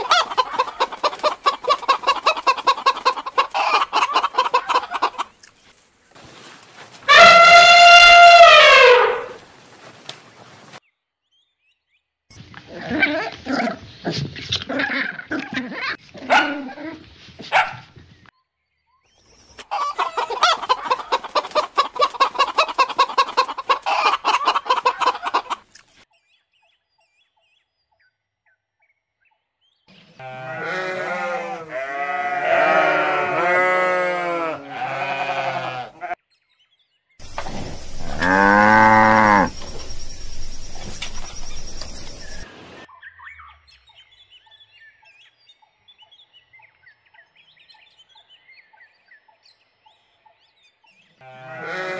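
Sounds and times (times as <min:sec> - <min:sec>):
fowl clucking: 0:00.0 - 0:05.4, 0:07.1 - 0:09.4, 0:19.6 - 0:25.7, 0:37.2 - 0:42.5
goat bleating: 0:30.2 - 0:36.2, 0:51.3 - 0:51.9.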